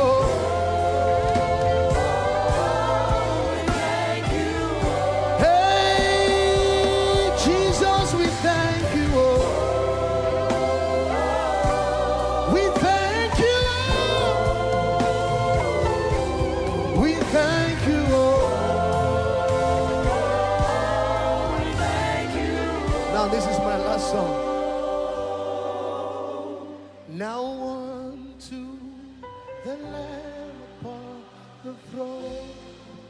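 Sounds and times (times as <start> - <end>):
band with bass and drums: 0.0 - 25.2
voices singing together: 0.0 - 27.4.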